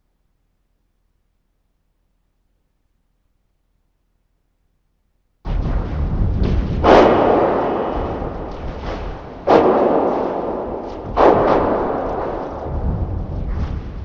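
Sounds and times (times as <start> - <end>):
rumbling monster creature noise: 5.5 - 14.0.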